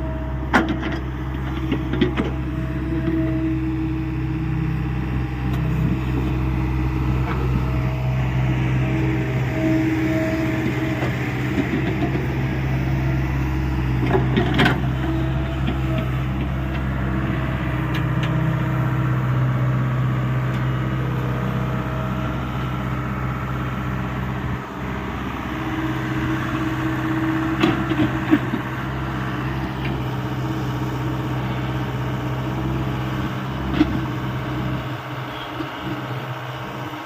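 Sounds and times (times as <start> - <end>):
excavator diesel engine running: 0.0 - 37.0.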